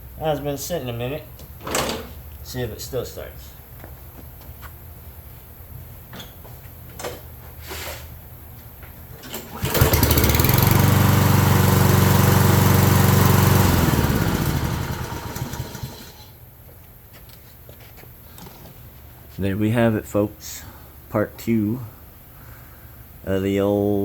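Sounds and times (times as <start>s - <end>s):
lawn mower engine running: 9.2s - 16.4s.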